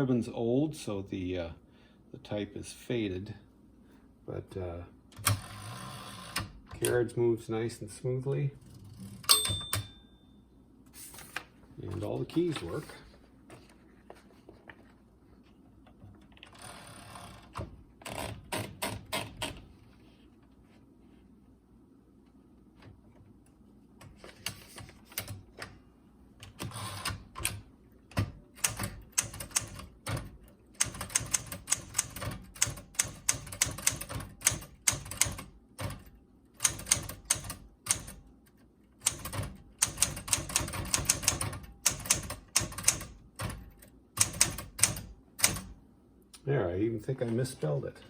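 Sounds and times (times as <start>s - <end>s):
manual typewriter keys striking: 26.5s - 38.2s, 39.0s - 45.7s.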